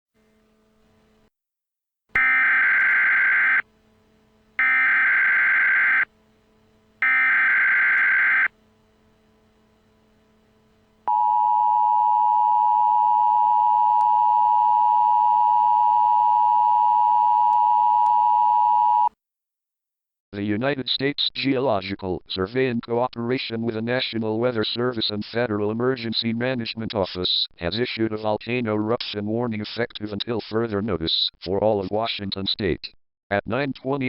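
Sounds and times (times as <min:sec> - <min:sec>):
digital header bursts: 0:02.2 - 0:03.6, 0:04.6 - 0:06.1, 0:07.0 - 0:08.5
two-tone attention signal: 0:02.2 - 0:03.6, 0:04.6 - 0:06.1, 0:07.0 - 0:08.5.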